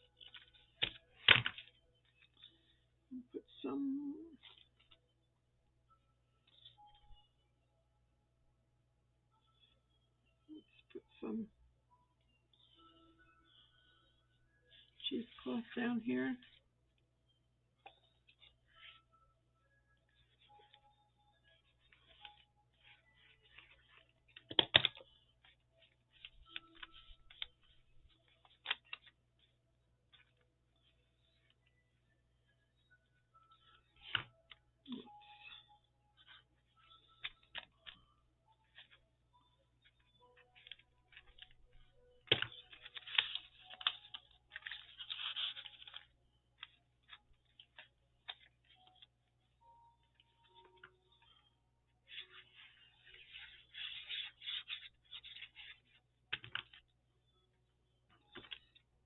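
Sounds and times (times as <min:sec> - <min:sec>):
paper crinkling and rustling: 0:00.0 - 0:02.8, 0:04.4 - 0:05.0, 0:20.1 - 0:31.7, 0:33.5 - 0:39.1, 0:39.8 - 0:49.4, 0:52.0 - 0:57.0.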